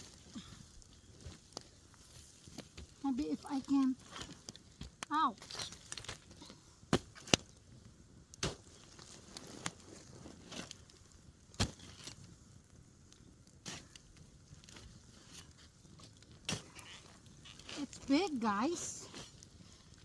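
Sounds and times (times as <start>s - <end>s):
sharp cracks and knocks: 3.6s - 7.6s, 8.3s - 9.8s, 11.5s - 12.3s, 16.0s - 18.2s.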